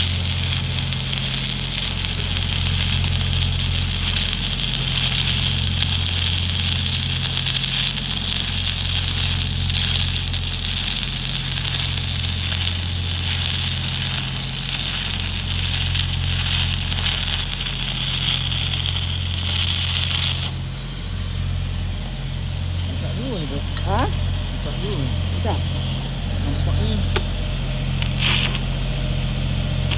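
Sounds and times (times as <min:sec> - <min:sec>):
steady low hum: 0:00.0 - 0:29.9
welding arc crackling hiss: 0:00.0 - 0:29.9.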